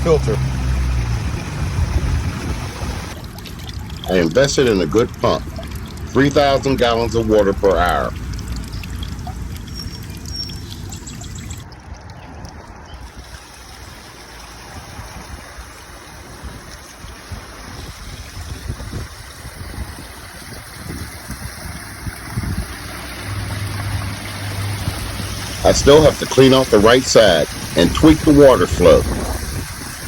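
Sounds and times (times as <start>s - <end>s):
waterfall splashing into pond: 0.0s - 30.0s.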